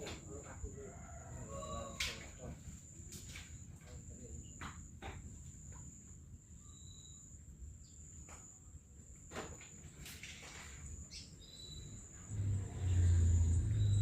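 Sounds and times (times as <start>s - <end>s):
high-pitched insect trill: 5.6s - 8.1s.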